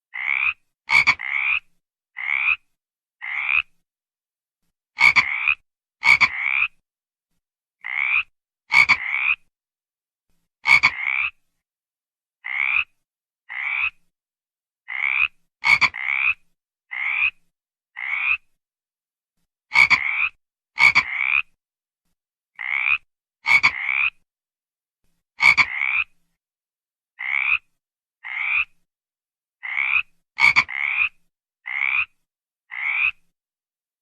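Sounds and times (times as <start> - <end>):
frog croaking: 0.1 - 3.7, 5.0 - 6.8, 7.8 - 9.5, 10.6 - 11.4, 12.4 - 14.0, 14.8 - 17.4, 18.0 - 18.5, 19.7 - 21.6, 22.6 - 24.2, 25.4 - 26.1, 27.2 - 28.8, 29.6 - 33.2.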